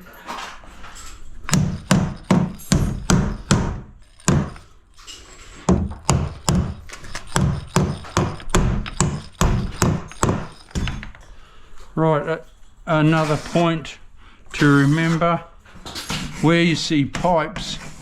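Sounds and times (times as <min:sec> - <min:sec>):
hammer driving nails: 0:01.5 - 0:11.2.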